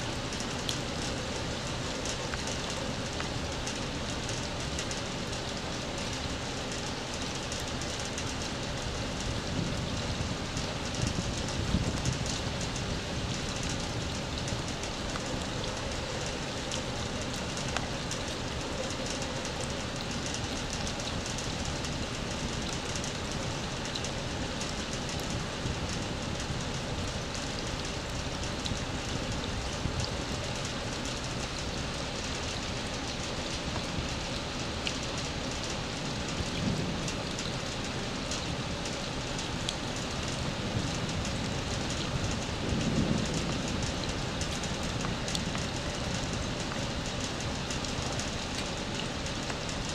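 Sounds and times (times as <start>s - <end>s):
rain on wet ground: 0.0s - 49.9s.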